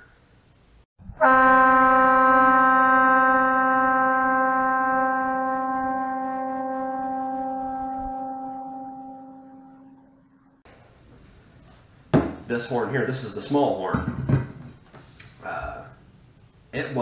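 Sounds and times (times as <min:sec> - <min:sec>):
air horn long blast: 0:01.1 - 0:10.4.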